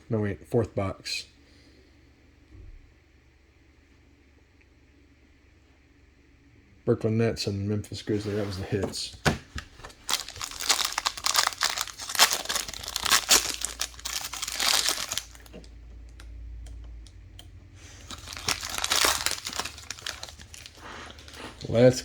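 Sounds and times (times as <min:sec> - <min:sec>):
plastic wrapping crinkling and tearing: 0:09.6 - 0:15.7, 0:17.9 - 0:22.0.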